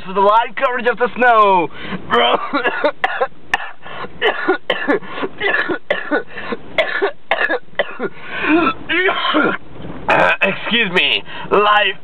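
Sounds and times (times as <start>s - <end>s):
man coughing: 2.1s - 10.7s.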